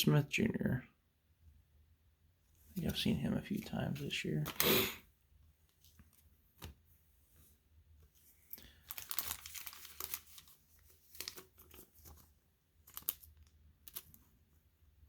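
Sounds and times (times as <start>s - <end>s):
cards and packaging rustling: 2.8s - 5.0s, 8.0s - 14.5s.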